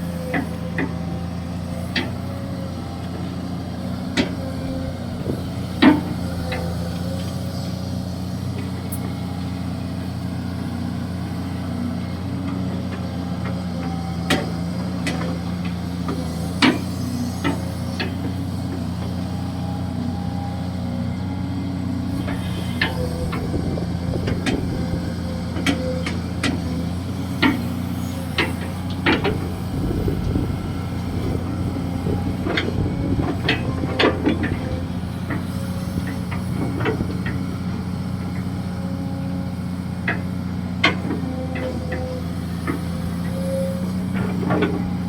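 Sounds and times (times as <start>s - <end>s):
excavator diesel engine running: 0.0s - 45.0s
sharp clanks and knocks: 25.6s - 30.4s.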